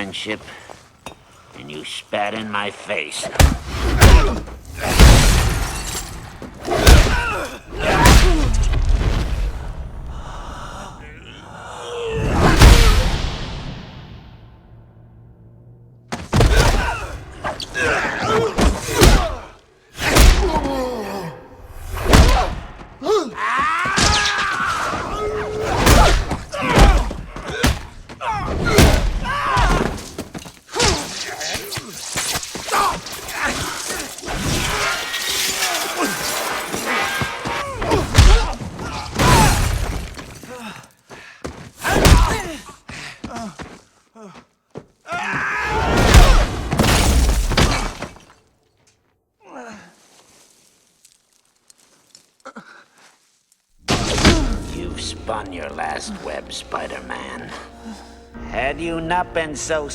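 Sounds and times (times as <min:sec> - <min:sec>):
punch impacts and body thuds: 0:03.4 - 0:05.7, 0:18.4 - 0:20.8, 0:22.0 - 0:22.9, 0:25.7 - 0:31.1, 0:41.8 - 0:42.6
debris crashing and shattering: 0:03.4 - 0:09.5, 0:32.0 - 0:40.5
grunting and groaning: 0:10.1 - 0:13.1, 0:20.2 - 0:21.7.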